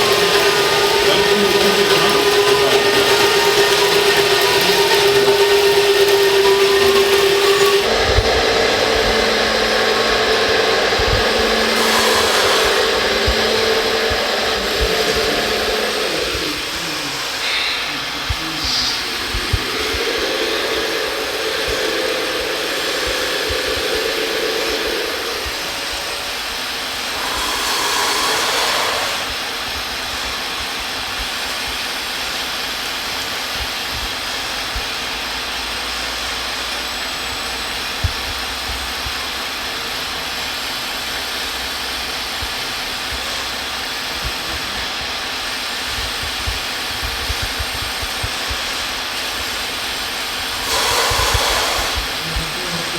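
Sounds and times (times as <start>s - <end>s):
model machine motors whirring: 0.0s - 30.6s, 50.3s - 52.9s.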